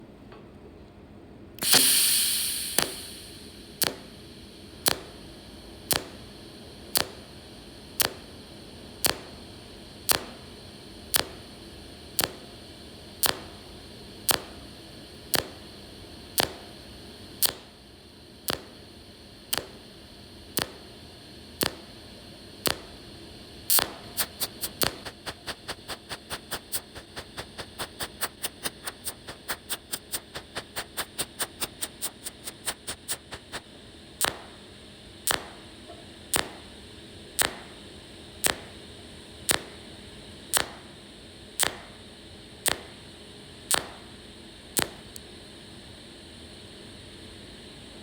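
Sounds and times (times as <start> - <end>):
burst of hiss: 1.6 - 4.0, 23.7 - 33.6
welder arc pulses snapping: 1.6 - 12.5, 13.2 - 17.8, 18.4 - 45.4.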